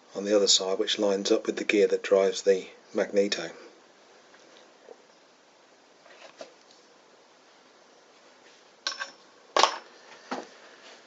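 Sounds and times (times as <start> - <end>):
light clinks and knocks: 8.8 - 9.9.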